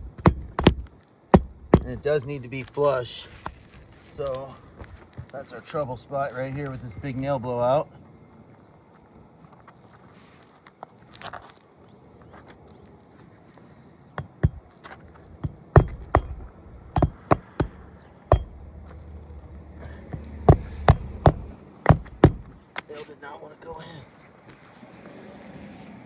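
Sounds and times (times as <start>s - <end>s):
hammer striking nail: 0.0s - 1.9s, 14.2s - 14.7s, 15.4s - 18.7s, 20.1s - 22.6s.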